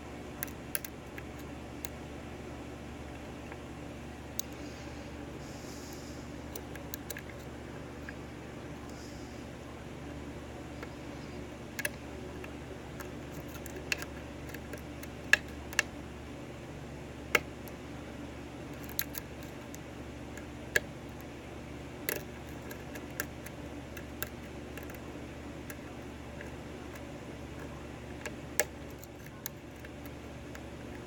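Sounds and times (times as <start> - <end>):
steady low hum: 0.0 - 31.0
lock pick metallic clicks: 18.8 - 19.8.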